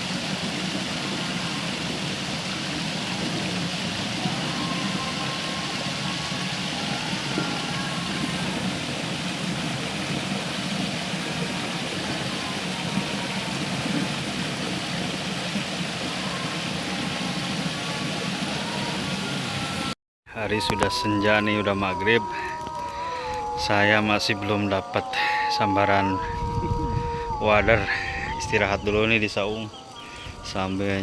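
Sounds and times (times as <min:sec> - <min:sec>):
river water flowing over rocks: 0:00.0 - 0:20.0.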